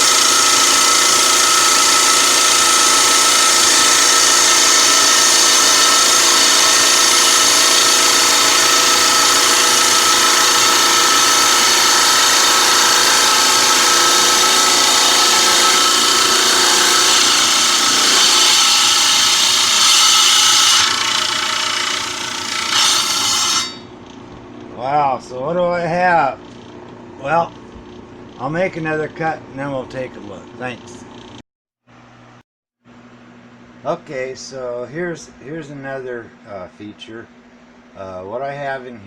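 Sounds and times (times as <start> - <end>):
trim saw cutting stone: 0.0 - 23.9.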